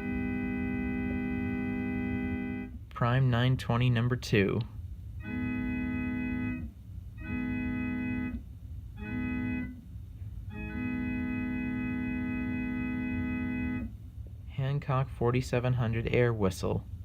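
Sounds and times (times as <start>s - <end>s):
keyboard imitating train horn: 0.0s - 2.8s, 5.2s - 14.0s.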